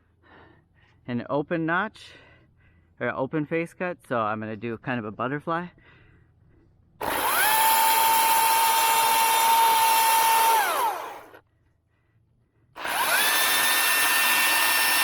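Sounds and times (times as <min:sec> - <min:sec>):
battery chainsaw whining: 0:07.0 - 0:11.4, 0:12.8 - 0:15.0.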